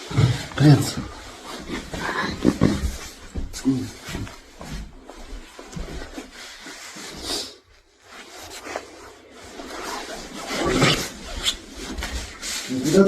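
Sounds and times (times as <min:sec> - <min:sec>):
cat scratching and rubbing: 0:05.7 - 0:13.0.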